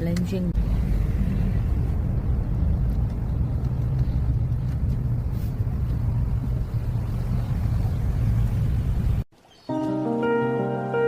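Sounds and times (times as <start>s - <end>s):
car engine and tyres rumbling: 0.0s - 9.3s.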